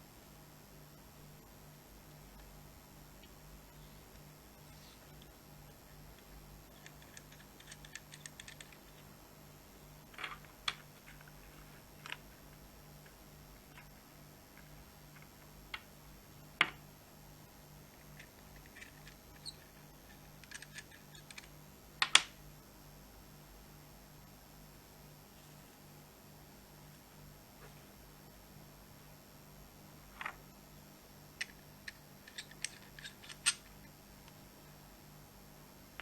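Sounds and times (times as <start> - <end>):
small hard parts clicking: 6.1 - 9.0, 18.0 - 21.5, 31.4 - 33.8.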